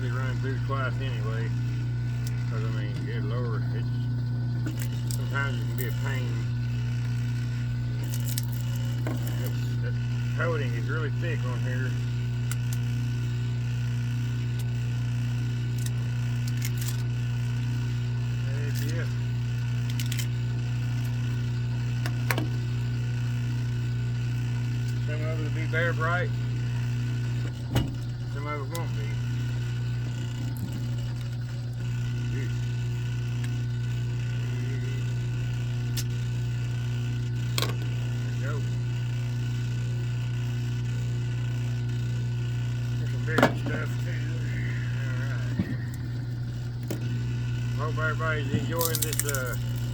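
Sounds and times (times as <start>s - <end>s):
steady low hum: 0.0s - 49.9s
wire stripper clicks and scrapes: 15.7s - 17.1s, 48.5s - 49.9s.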